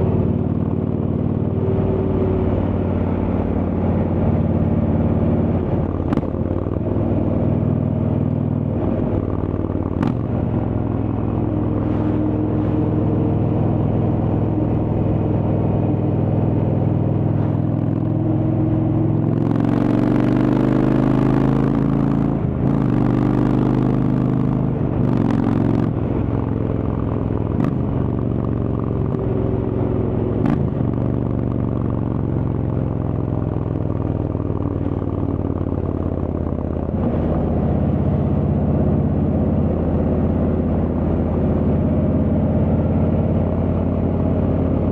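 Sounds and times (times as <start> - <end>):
motorcycle engine running: 0.0 - 44.9.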